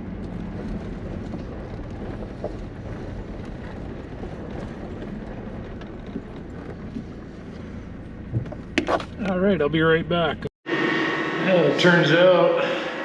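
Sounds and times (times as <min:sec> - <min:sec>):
vehicle engine and road noise: 0:00.0 - 0:13.0.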